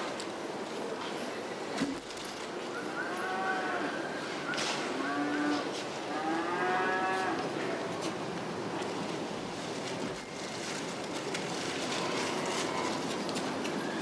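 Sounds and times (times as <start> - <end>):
cattle mooing: 5.0 - 7.4.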